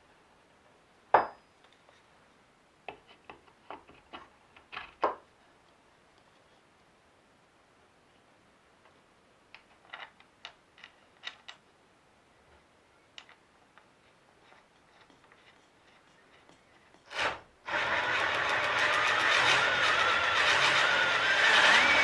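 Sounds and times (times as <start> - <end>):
chainsaw engine starting and running: 17.1 - 22.0.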